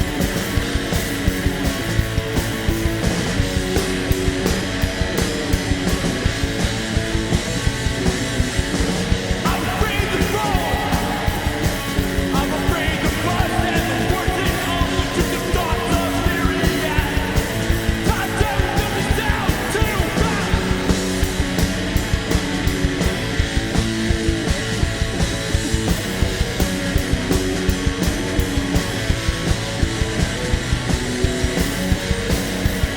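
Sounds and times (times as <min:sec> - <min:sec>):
bass guitar: 0:00.0 - 0:32.9
drums: 0:00.0 - 0:32.9
electric guitars: 0:00.0 - 0:32.9
person singing: 0:09.4 - 0:21.0.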